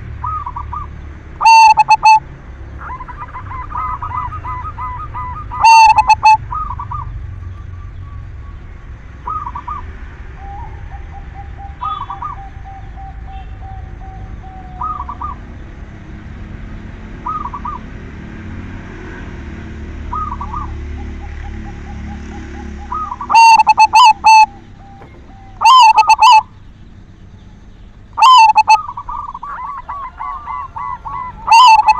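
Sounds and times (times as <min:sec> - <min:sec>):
dove cooing: 0:00.0 - 0:07.2, 0:09.2 - 0:15.6, 0:20.1 - 0:26.9, 0:28.2 - 0:31.9.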